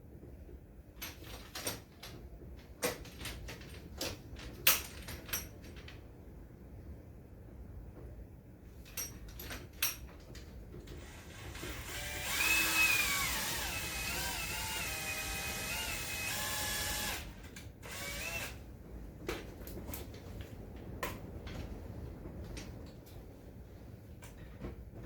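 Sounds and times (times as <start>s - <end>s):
drill clicks: 10.9s - 18.6s
power drill driving screw: 11.0s - 18.6s.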